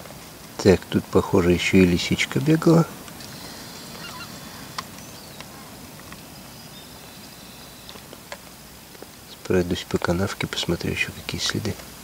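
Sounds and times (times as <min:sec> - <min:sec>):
faint bird calls: 0:01.4 - 0:08.4.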